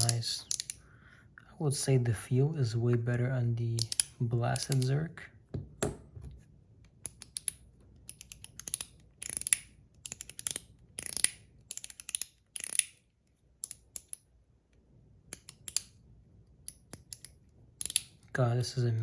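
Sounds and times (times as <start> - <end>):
metallic clicks of fidget slider: 0.0 - 0.8, 3.8 - 5.0, 7.0 - 13.0, 16.7 - 18.2.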